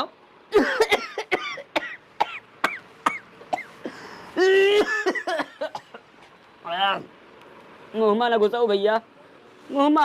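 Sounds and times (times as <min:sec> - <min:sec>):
man coughing: 0:00.6 - 0:06.0.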